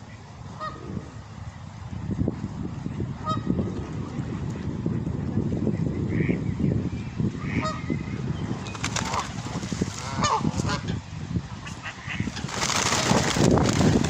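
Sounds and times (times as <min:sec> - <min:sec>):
geese honking: 0:07.4 - 0:07.9, 0:10.0 - 0:11.0.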